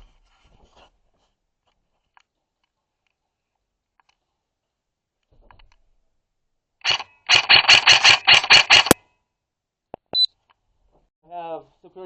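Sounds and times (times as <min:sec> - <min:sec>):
airsoft rifle shots: 0:06.8 - 0:09.0.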